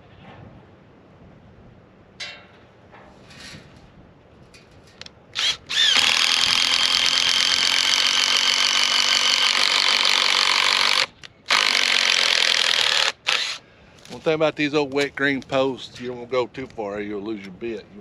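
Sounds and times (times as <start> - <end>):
power drill boring into wood: 5.4 - 13.6.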